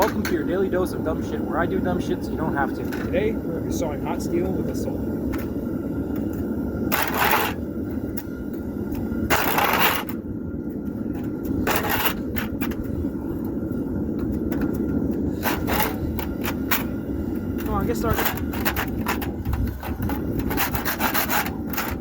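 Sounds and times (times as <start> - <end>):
low rumble: 0.0 - 22.0
hand saw rasping on steel: 18.2 - 22.0.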